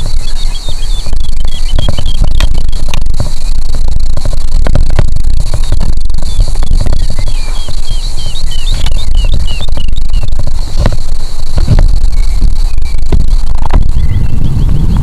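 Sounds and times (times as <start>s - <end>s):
wind buffeting microphone: 0.0s - 15.0s
faint bird chirps: 0.1s - 2.8s, 6.3s - 10.3s.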